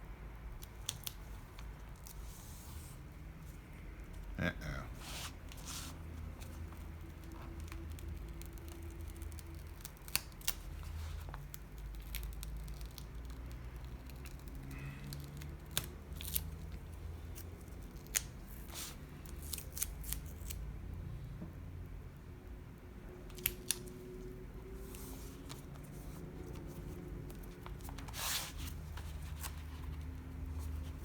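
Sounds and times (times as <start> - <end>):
paper handling: 5.0 - 13.0, 24.6 - 31.0
scissors snipping paper: 6.4 - 16.8.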